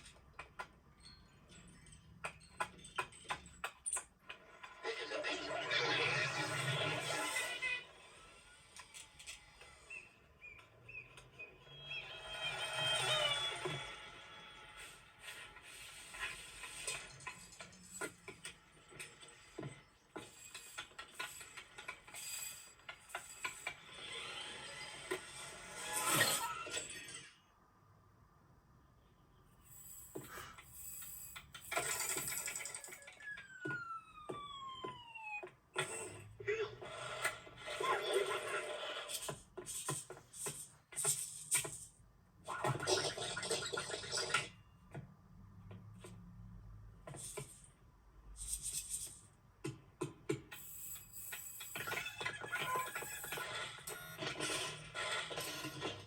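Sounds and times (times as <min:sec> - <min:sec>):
plastic toys clicking and clattering: 0:00.0 - 0:05.0, 0:16.5 - 0:24.3, 0:29.7 - 0:35.1, 0:39.1 - 0:42.0.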